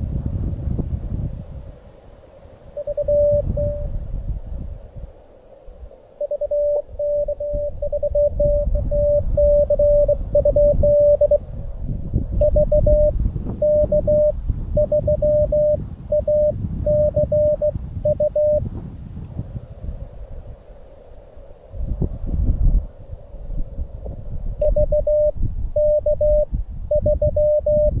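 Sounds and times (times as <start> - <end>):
low rumble: 2.7 - 5.2, 5.8 - 27.9
morse code tone: 2.8 - 3.9, 6.2 - 11.4, 12.4 - 18.7, 24.6 - 28.0.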